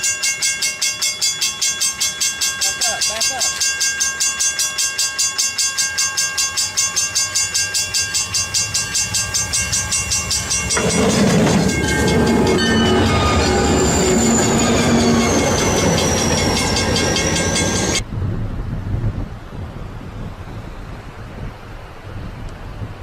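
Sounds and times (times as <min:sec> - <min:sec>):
train running: 0:00.0 - 0:18.1
loud rough train rumble: 0:00.0 - 0:19.0.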